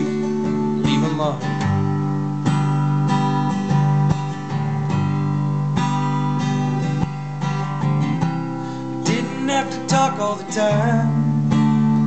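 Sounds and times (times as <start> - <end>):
person singing: 0.0 - 1.8, 9.0 - 12.0
acoustic guitar strumming chords: 0.0 - 12.0.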